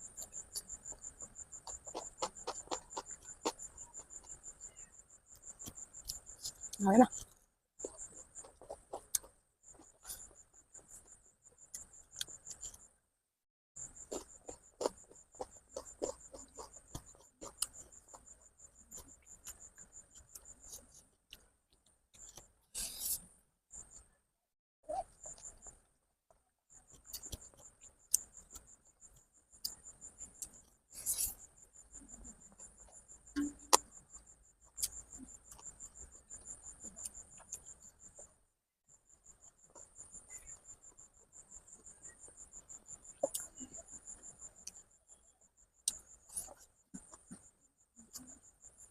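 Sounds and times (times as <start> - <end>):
crickets trilling: 0.0 - 12.9, 39.0 - 48.9
person eating noodles: 14.0 - 21.4.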